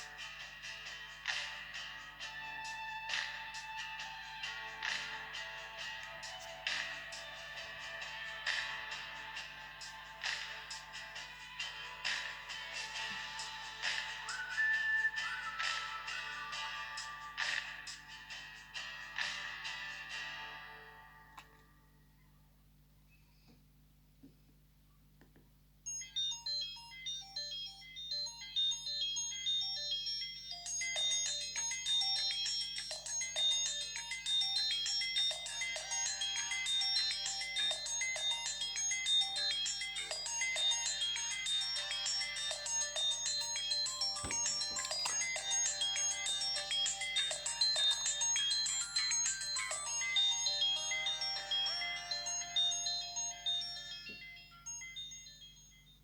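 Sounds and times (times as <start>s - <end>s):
phone ringtone melody: 25.9s - 56.0s.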